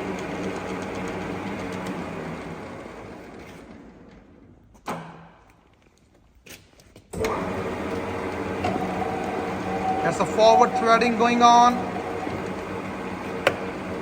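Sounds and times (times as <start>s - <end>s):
lathe spindle and gearing running: 0.0s - 4.1s, 7.2s - 14.0s.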